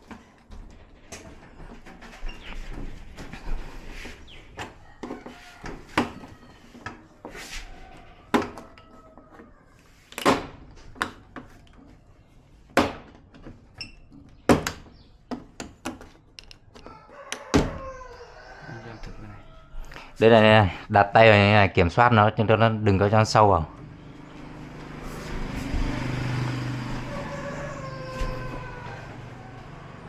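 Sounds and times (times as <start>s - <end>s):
knocks and clunks of handling: 8.2s - 12.0s, 12.7s - 17.8s.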